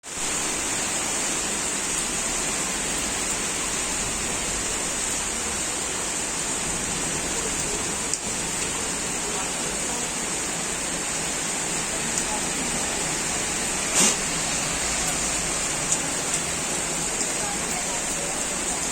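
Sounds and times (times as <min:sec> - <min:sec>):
heavy rain pouring: 0:00.0 - 0:18.9.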